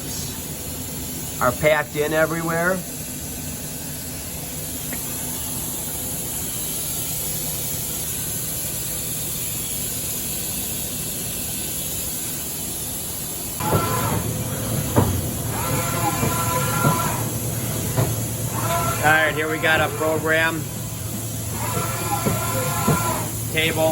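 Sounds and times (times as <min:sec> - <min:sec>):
compressed air hissing: 0:11.4 - 0:23.9.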